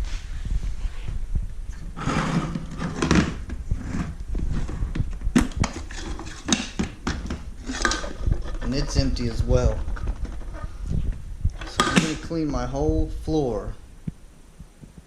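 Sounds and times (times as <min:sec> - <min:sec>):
plastic parts knocking and rattling: 0:02.5 - 0:08.9, 0:09.5 - 0:10.6, 0:11.6 - 0:12.2.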